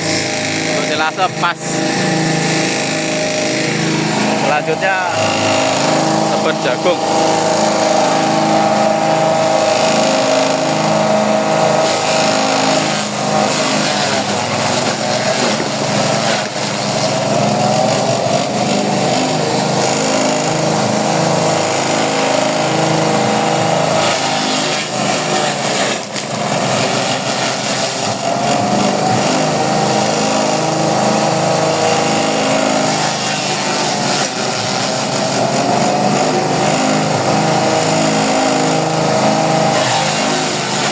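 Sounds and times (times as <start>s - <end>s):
petrol engine running under load: 0.0s - 40.9s
corn stalks being chopped: 9.4s - 19.4s, 23.9s - 30.1s, 31.8s - 40.9s.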